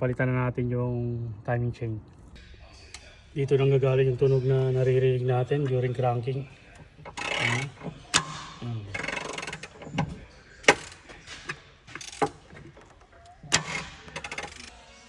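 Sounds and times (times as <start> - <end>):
metal tool clicks and knocks: 6.8 - 14.7.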